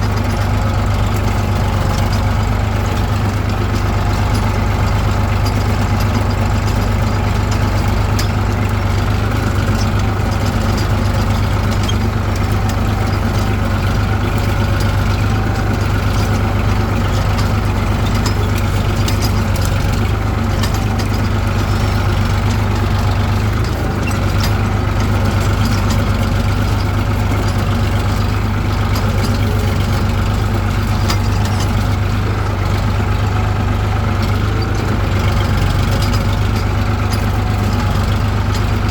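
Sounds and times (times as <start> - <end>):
tractor diesel engine running: 0.0 - 38.9.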